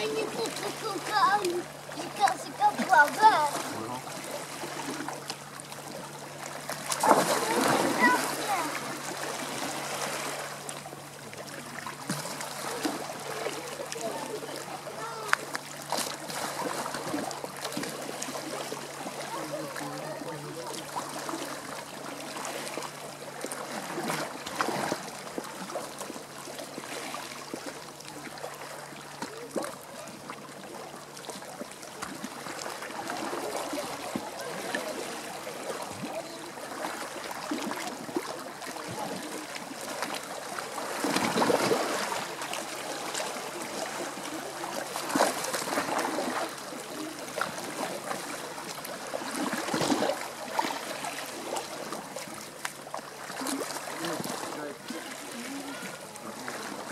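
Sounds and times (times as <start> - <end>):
sea water lapping and splashing: 0.0 - 56.9.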